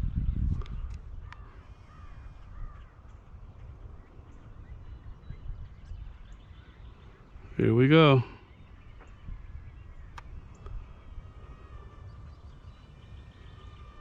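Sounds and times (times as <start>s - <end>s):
wind rumble on microphone: 0.0s - 14.0s
crows cawing: 1.2s - 3.1s.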